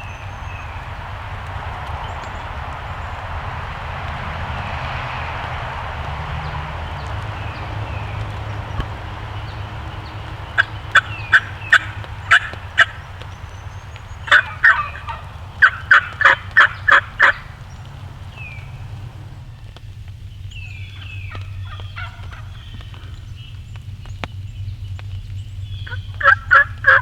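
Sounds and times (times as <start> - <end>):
steady low rumble: 0.0 - 27.0
turkey yelping: 7.1 - 19.5, 20.6 - 23.3, 25.8 - 27.0.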